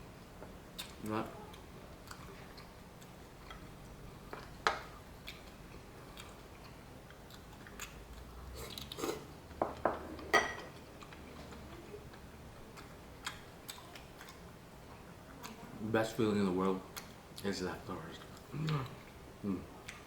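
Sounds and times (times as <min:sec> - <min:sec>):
person chewing food: 0:00.8 - 0:15.6, 0:18.2 - 0:20.0.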